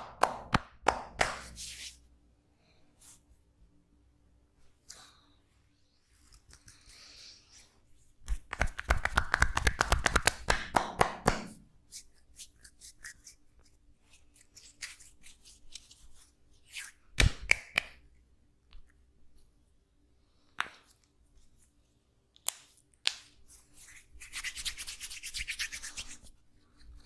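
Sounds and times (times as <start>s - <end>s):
hands slapping body: 0.0s - 1.6s, 8.2s - 11.6s, 17.2s - 18.0s.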